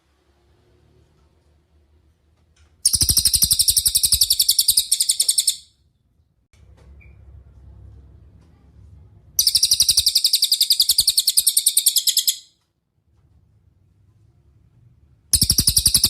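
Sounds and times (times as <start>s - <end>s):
faint low background rumble: 5.9s - 9.6s
songbird high trill: 9.4s - 12.5s.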